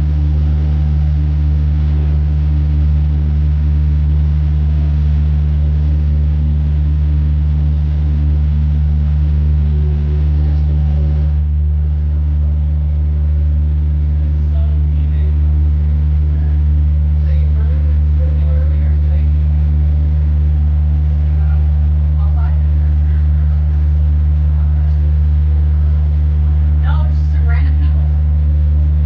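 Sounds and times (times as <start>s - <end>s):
boat engine droning: 0.0s - 29.0s.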